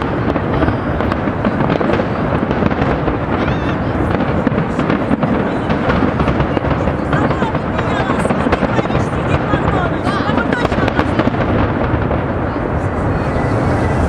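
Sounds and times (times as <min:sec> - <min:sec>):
fireworks bangs and crackling: 0:00.0 - 0:14.0.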